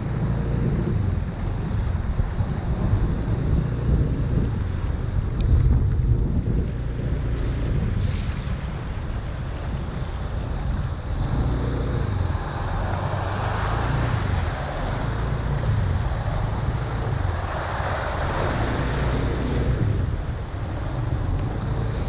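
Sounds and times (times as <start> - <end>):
traffic noise: 0.0 - 22.0
wind buffeting microphone: 0.0 - 22.0
vehicles driving through water: 6.7 - 22.0.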